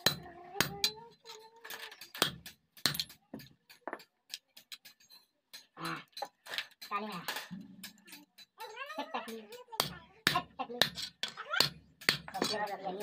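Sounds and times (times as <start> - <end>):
small metal pieces clinking: 1.1 - 3.2.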